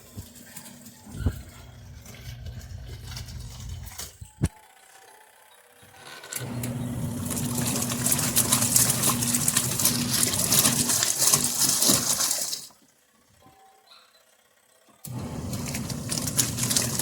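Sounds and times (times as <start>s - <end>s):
washing machine motor hum: 0.0s - 17.0s
water splashing and rattling: 6.4s - 12.8s, 15.1s - 17.0s.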